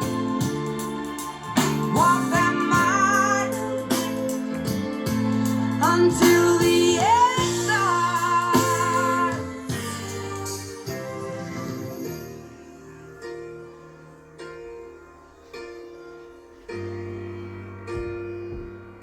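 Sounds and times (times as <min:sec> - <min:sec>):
song through speaker: 0:00.0 - 0:14.5.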